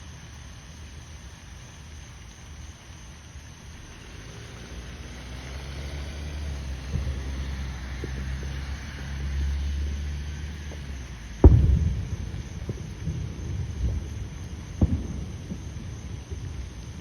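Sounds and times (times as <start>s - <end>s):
distant fireworks rumble: 0.0s - 17.0s
firework bang: 6.5s - 9.0s, 10.5s - 17.0s.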